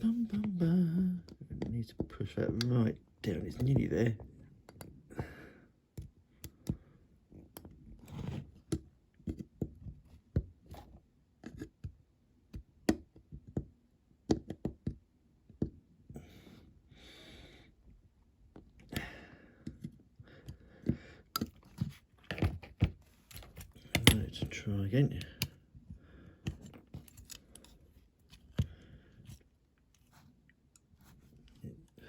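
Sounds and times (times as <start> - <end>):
model parts knocking and clicking: 20.8 - 25.6.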